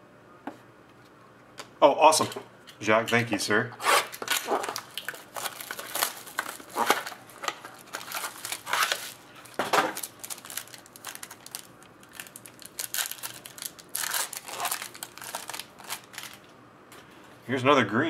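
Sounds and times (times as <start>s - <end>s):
cards and packaging rustling: 4.0s - 16.5s.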